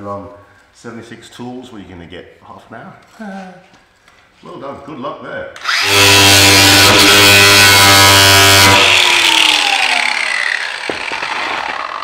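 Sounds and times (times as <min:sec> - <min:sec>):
angle grinder grinding metal: 0:05.6 - 0:12.0.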